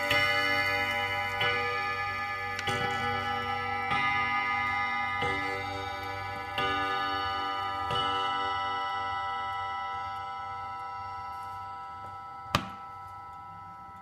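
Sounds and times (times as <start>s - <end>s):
clock striking: 0.0s - 14.0s
clock ticking: 0.0s - 14.0s.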